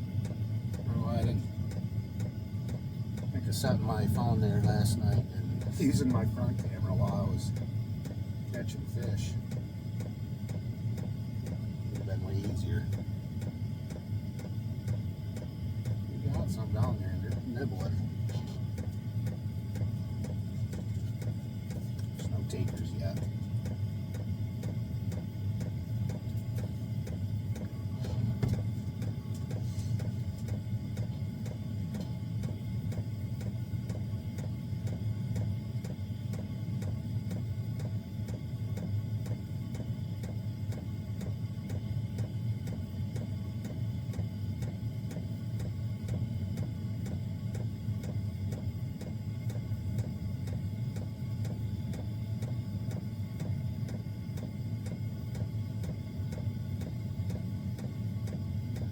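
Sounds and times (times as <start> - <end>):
air heater fan humming: 0.0 - 58.9
fuel pump ticking: 0.0 - 58.9.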